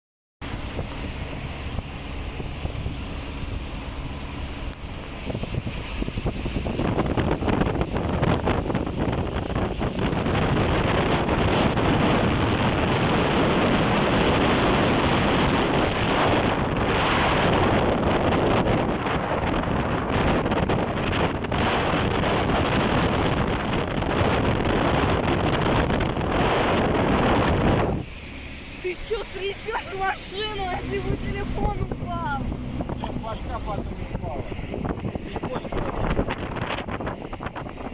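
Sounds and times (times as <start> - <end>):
wind buffeting microphone: 0.4 - 37.9.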